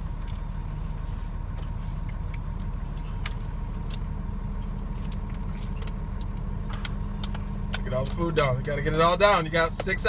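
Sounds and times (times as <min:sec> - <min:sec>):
vehicle engine idling: 0:00.0 - 0:10.0.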